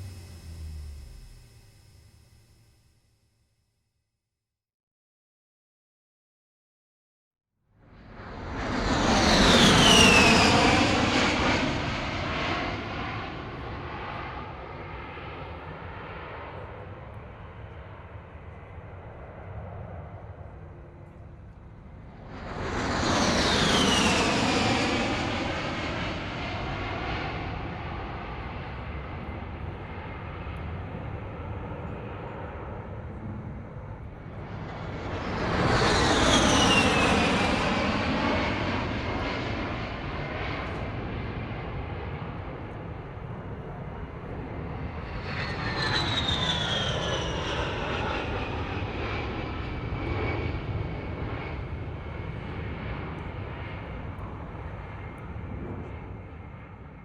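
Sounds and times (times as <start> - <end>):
steady rumble: 0.0 - 3.5.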